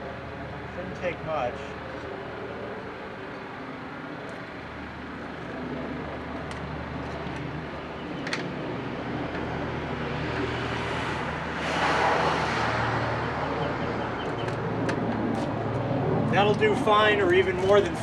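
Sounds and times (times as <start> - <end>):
road traffic engine hum: 0.0 - 18.0.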